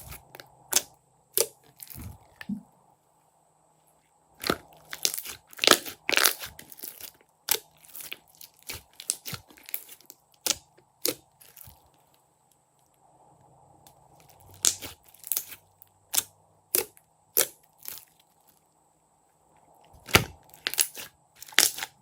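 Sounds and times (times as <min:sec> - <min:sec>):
slime crunching and clicking: 0:00.0 - 0:02.5, 0:04.4 - 0:11.8, 0:14.5 - 0:18.1, 0:20.0 - 0:22.0.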